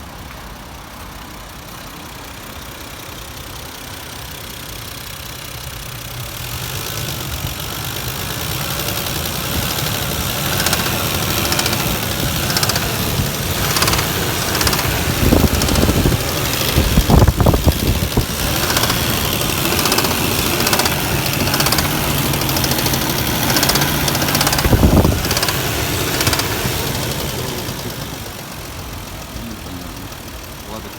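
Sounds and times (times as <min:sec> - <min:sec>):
car engine running: 0:00.0 - 0:30.9
engine bearing knock: 0:10.4 - 0:26.7.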